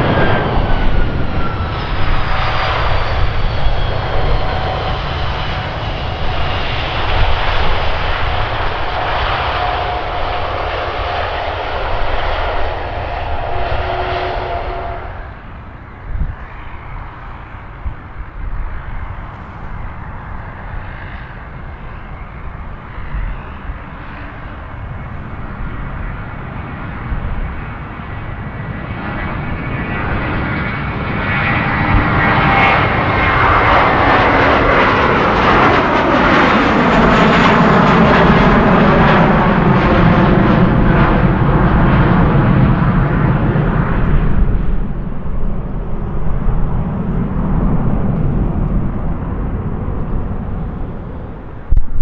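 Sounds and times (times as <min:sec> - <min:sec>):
jet airliner taking off: 0:00.0 - 0:52.0.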